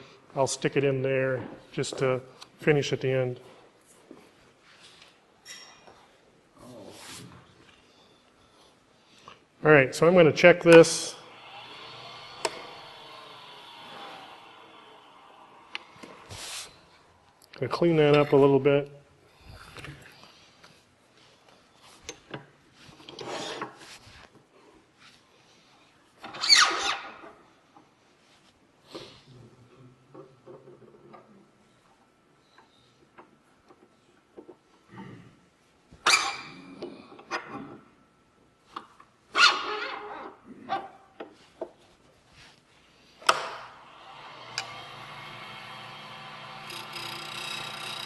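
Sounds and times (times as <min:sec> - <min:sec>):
lathe tool cutting wood: 0:10.9 - 0:16.5, 0:43.8 - 0:48.0.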